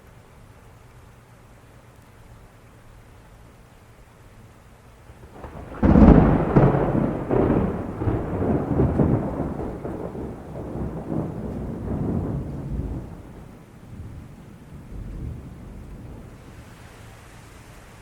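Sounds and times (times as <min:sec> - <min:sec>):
low rumble of thunder: 0:05.1 - 0:17.0
thunder crack: 0:05.2 - 0:14.2.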